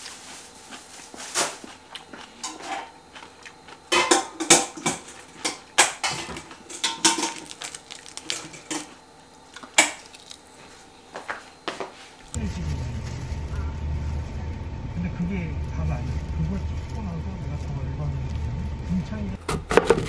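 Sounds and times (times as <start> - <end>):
dishes and cutlery clinking: 2.4 - 3.0, 3.9 - 7.6.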